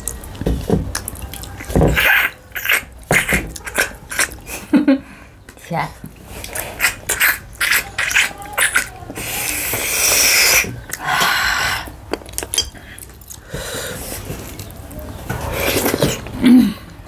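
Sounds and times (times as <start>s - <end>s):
snails slurped from shells: 0.9s - 4.6s, 6.2s - 14.8s.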